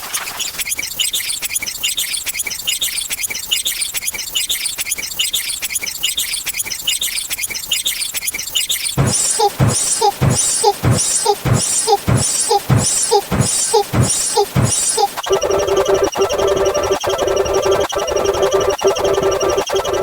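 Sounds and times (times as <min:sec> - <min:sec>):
rapid high-pitched squeaks: 0:06.2 - 0:20.0.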